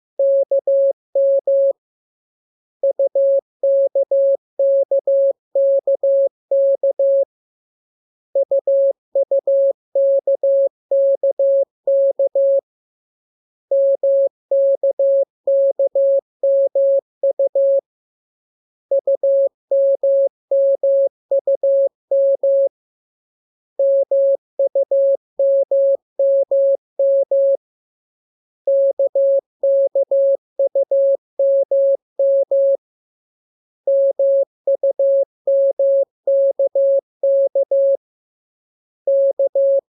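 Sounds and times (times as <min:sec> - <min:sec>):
morse code beeps: 0:00.2 - 0:01.8, 0:02.8 - 0:07.3, 0:08.4 - 0:12.6, 0:13.7 - 0:17.8, 0:18.9 - 0:22.7, 0:23.8 - 0:27.6, 0:28.7 - 0:32.8, 0:33.9 - 0:38.0, 0:39.1 - 0:39.9.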